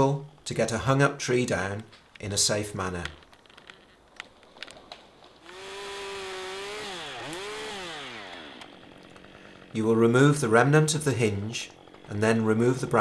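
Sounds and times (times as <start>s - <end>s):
chainsaw running at high revs: 5.4s - 13.0s.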